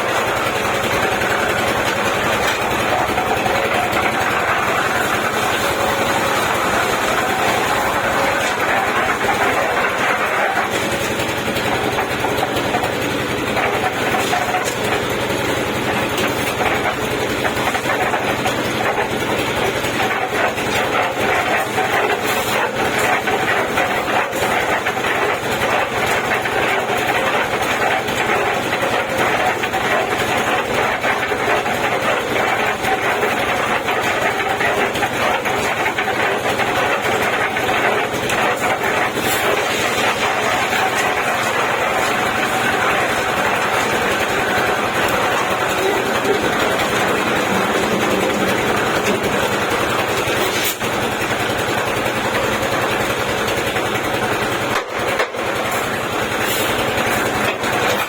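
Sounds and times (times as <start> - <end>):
concrete mixer engine drone: 0.0 - 58.0
continuous rattle: 0.0 - 58.0.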